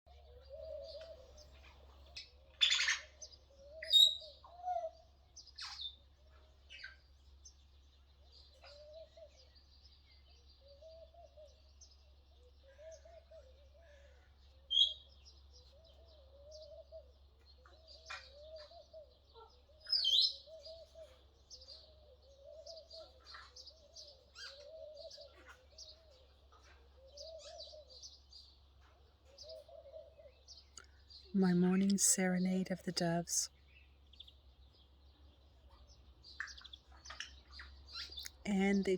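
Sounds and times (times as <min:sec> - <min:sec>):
small birds chirping: 0:00.1 - 0:38.9
doves cooing: 0:00.2 - 0:05.1, 0:08.5 - 0:09.5, 0:12.4 - 0:14.9, 0:15.6 - 0:30.7.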